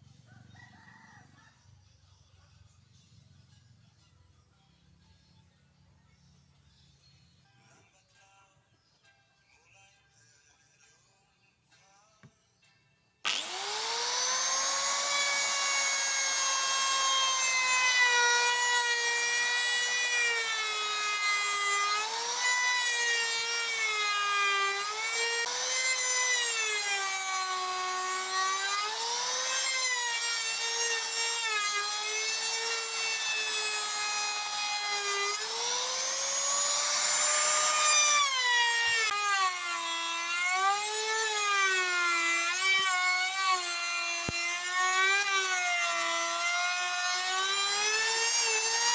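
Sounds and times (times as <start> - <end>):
electric drill whining: 13.2 - 48.9.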